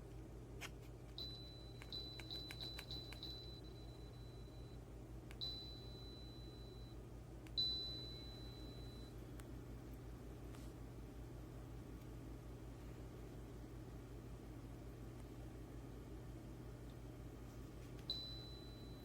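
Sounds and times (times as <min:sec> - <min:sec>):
steady low hum: 0:00.0 - 0:19.0
quick clicks: 0:01.8 - 0:03.3.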